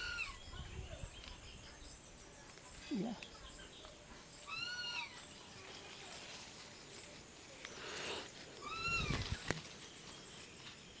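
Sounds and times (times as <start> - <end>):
high animal call: 4.4 - 5.3.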